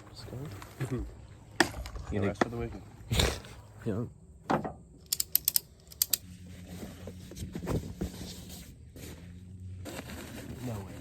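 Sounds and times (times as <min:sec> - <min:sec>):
sharp clicks of camping gear: 0:05.0 - 0:06.4.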